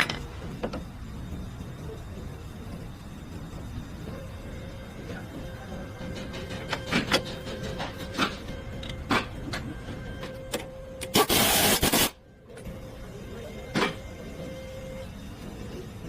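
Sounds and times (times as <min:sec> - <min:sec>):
loud burst of noise: 0:11.0 - 0:12.2.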